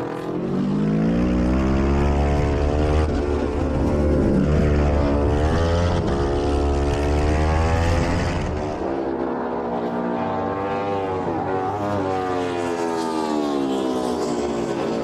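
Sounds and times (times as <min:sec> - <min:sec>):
motorcycle engine at high revs: 0:00.0 - 0:15.0.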